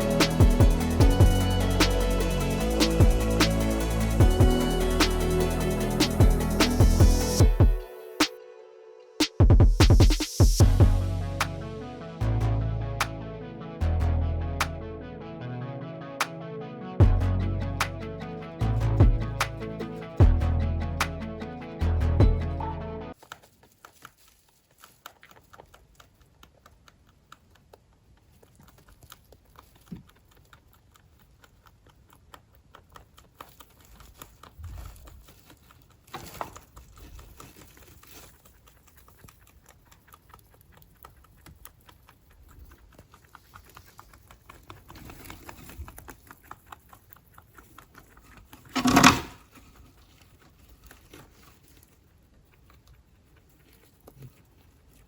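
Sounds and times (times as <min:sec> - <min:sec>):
rabbit clicking and pattering: 0:23.2 - 0:55.0.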